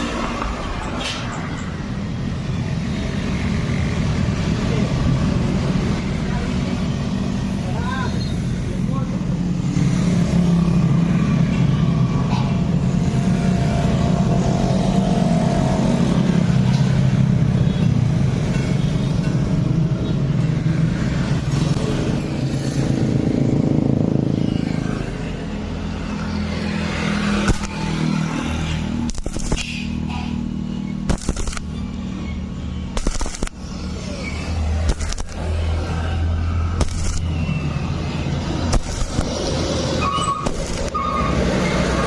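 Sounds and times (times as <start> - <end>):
welding arc crackling: 27.2 - 30.1, 31.1 - 31.9, 32.9 - 36.1, 36.7 - 41.4
sharp clicks: 27.4 - 27.9, 29.0 - 30.0, 31.0 - 32.0, 32.9 - 33.7, 34.8 - 35.6, 36.8 - 37.5, 38.7 - 39.6, 40.4 - 41.0.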